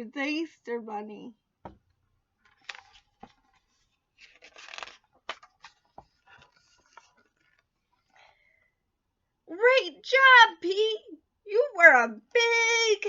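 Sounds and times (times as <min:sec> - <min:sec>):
book pages rustling: 0:01.7 - 0:08.5.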